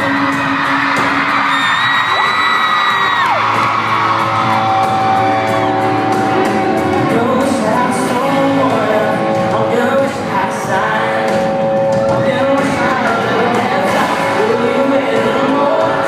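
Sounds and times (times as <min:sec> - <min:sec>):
audience whooping: 0:00.0 - 0:07.0
live band music: 0:00.0 - 0:16.0.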